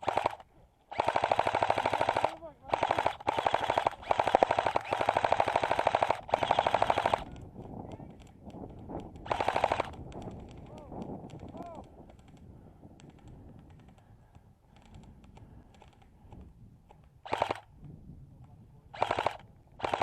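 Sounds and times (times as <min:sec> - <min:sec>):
airsoft rifle full-auto bursts: 0:00.0 - 0:07.3, 0:09.2 - 0:10.6, 0:17.2 - 0:17.7, 0:18.9 - 0:20.0.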